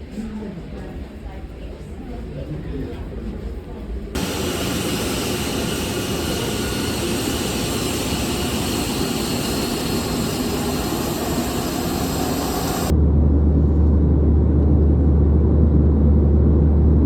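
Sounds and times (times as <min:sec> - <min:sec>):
jet engine and airflow in cabin: 0:04.2 - 0:17.0.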